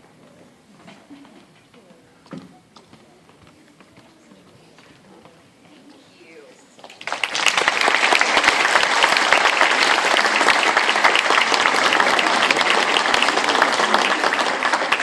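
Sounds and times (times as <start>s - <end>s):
audience applauding: 6.8s - 15.0s.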